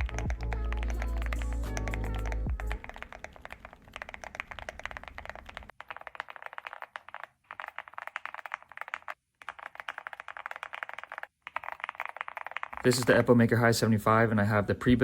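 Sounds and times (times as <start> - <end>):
mechanical keyboard typing: 0.0 - 13.3.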